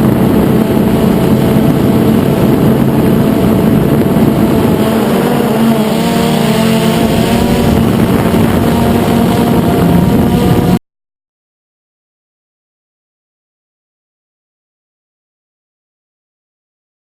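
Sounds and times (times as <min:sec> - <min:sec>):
quadcopter motors buzzing: 0:00.0 - 0:10.8.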